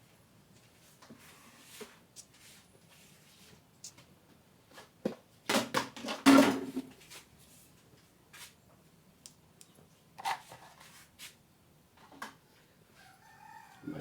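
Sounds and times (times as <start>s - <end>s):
kitchen knocks and clatter: 5.5s - 6.9s.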